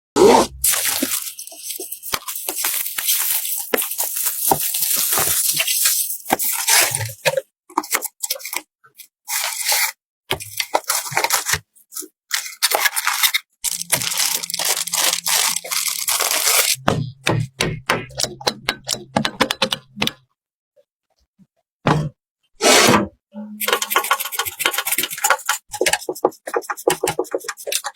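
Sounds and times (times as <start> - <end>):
plastic wrap crinkling and tearing: 0.6 - 7.3, 10.5 - 11.6, 12.3 - 16.8.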